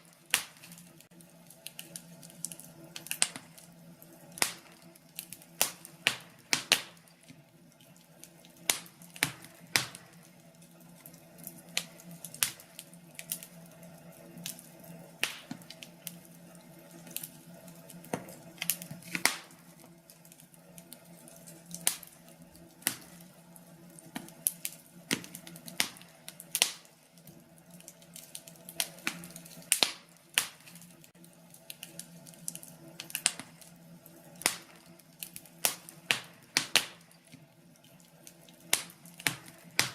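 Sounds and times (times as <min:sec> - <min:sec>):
faint steady hum: 0:00.0 - 0:39.9
wood fire crackling: 0:00.0 - 0:39.9.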